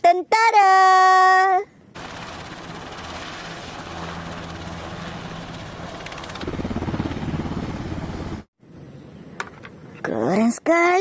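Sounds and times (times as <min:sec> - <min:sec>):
helicopter rotor and turbine: 0:02.0 - 0:08.5.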